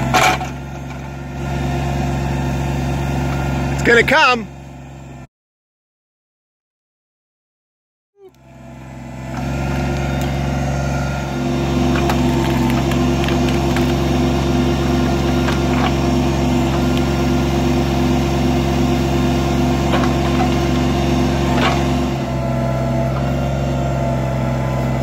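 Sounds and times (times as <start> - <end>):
tractor diesel engine running: 0.0 - 5.3, 8.3 - 25.0
backhoe clicks and knocks: 11.9 - 14.0.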